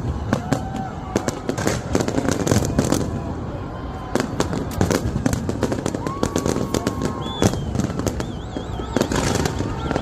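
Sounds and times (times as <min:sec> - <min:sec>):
fireworks bangs and crackles: 0:00.0 - 0:10.0
fireworks whistling: 0:04.1 - 0:10.0.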